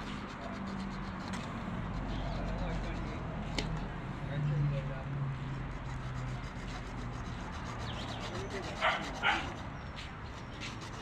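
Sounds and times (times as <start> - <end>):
dog barking: 8.8 - 9.5.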